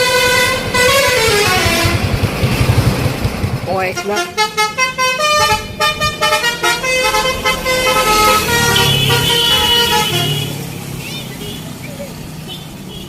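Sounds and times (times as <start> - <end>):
musical air horn playing a tune: 0.0 - 2.1, 4.0 - 10.6.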